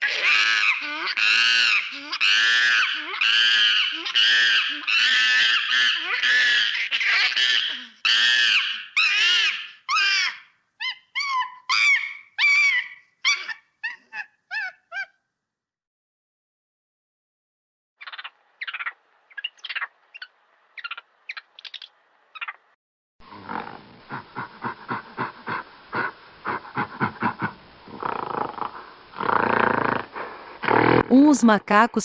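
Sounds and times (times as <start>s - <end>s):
monkey calling: 0.0s - 15.2s, 18.0s - 22.6s.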